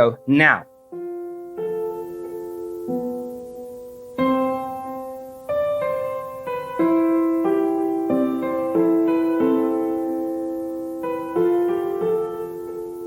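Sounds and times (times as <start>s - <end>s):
gentle piano chords: 0.0s - 13.0s.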